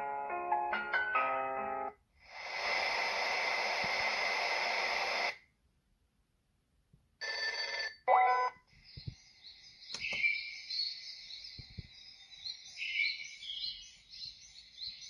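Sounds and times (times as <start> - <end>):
hissing rushing sound from speaker: 2.3 - 5.4.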